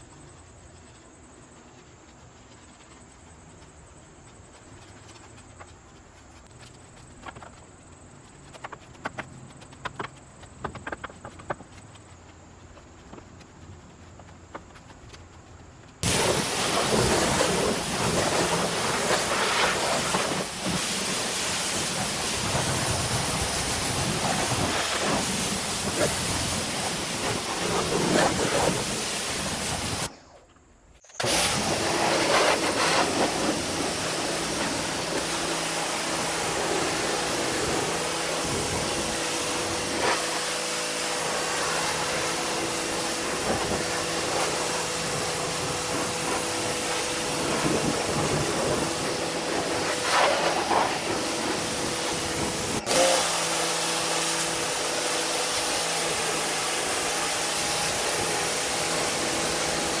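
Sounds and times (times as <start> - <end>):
pressure washer spraying water: 16.0 - 30.1, 31.2 - 60.0.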